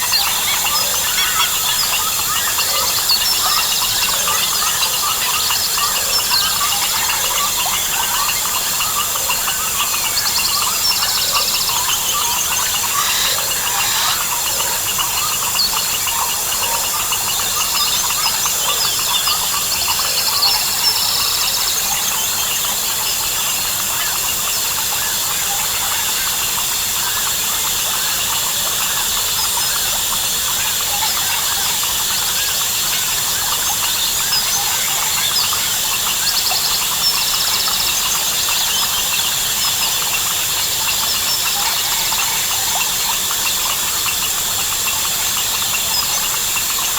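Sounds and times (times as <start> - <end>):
bird calls: 0.0 - 23.4
frog calls: 0.0 - 46.9
insects droning: 0.0 - 46.9
pulsed insect trill: 0.0 - 46.9.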